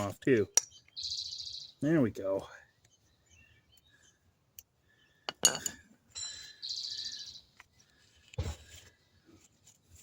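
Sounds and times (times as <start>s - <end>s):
small bird trilling: 0.7s - 1.8s, 6.5s - 7.5s.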